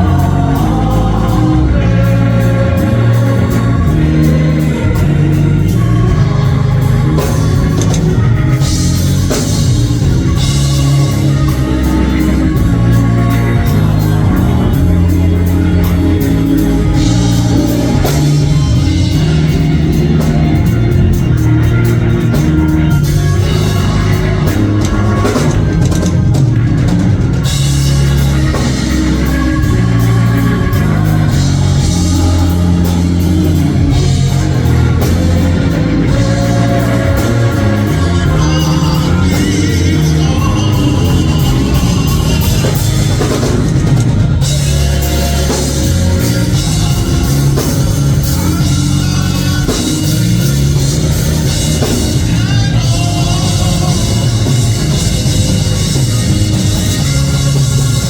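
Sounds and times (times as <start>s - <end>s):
bass: 0.0s - 58.0s
drum kit: 0.0s - 58.0s
guitar: 0.0s - 58.0s
voices singing along: 0.0s - 58.0s.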